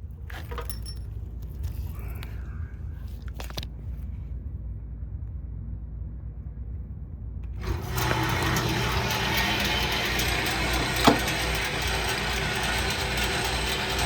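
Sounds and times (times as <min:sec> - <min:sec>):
electric motor humming: 0:07.6 - 0:14.0
hissing machine noise: 0:07.6 - 0:14.0.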